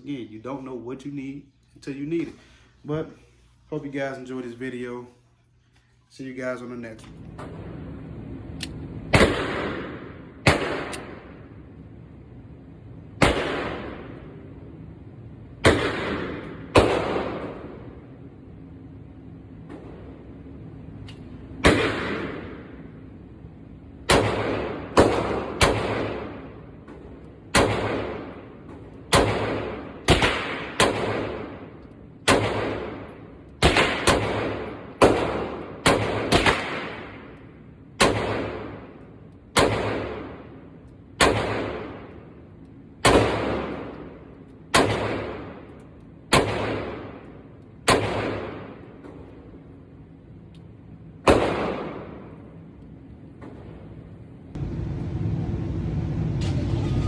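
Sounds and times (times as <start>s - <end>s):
pistol shots with echo: 9.1s - 11.7s, 13.1s - 14.8s, 15.6s - 18.2s, 21.2s - 23.2s, 24.0s - 49.9s, 51.2s - 52.8s.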